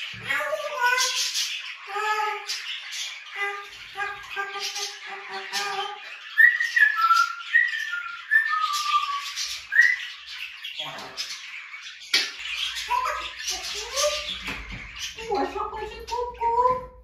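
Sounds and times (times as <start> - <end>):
budgerigars chirping: 0.0 - 17.0
parrot whistling a tune: 6.4 - 10.0.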